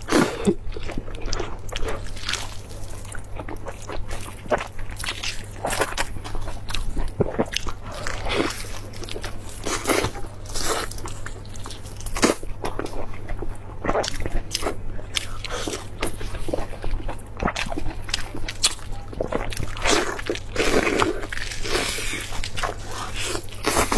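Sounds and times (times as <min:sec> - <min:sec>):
person chewing crunchy food: 0:00.0 - 0:23.9.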